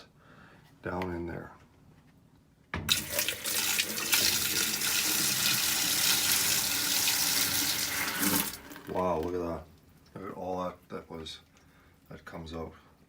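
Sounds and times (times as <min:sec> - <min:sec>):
water pouring from a pitcher: 0:02.9 - 0:09.2.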